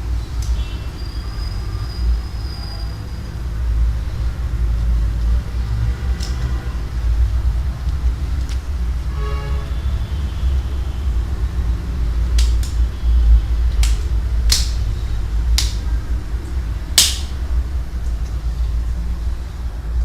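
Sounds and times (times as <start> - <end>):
sharp clicks of small parts: 6.2 - 6.5, 12.3 - 12.9, 13.7 - 14.9, 15.5 - 15.9, 17.0 - 17.4.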